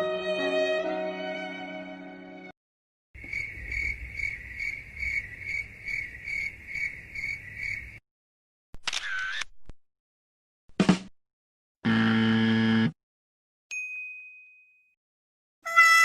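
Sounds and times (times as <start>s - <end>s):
sad violin piece: 0.0s - 2.5s
crickets chirping: 3.2s - 8.0s.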